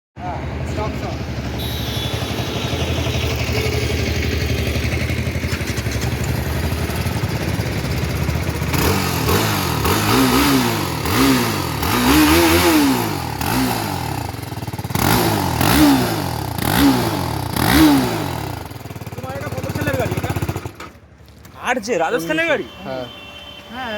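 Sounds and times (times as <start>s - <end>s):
motorcycle engine idling: 0.2s - 11.9s, 13.1s - 21.2s
engine revving blips: 1.3s - 6.7s, 8.7s - 18.7s.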